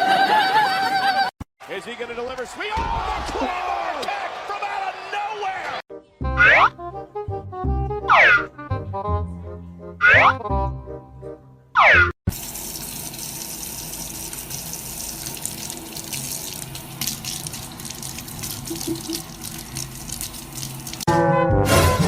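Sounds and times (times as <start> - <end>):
cartoon boing effect: 6.3 - 6.8, 8.1 - 8.5, 10.0 - 10.4, 11.8 - 12.1
running water: 12.3 - 21.1.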